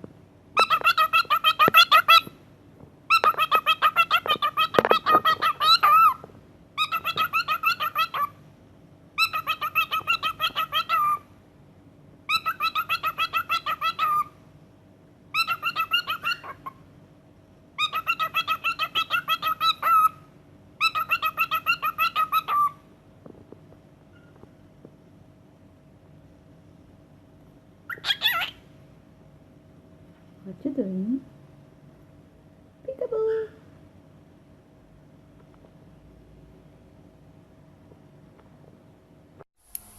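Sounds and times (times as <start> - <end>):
parrot calling in rapid pulses: 0.6 - 2.4, 3.1 - 8.4, 9.2 - 11.3, 12.3 - 14.4, 15.3 - 16.8, 17.8 - 22.8, 27.9 - 28.7.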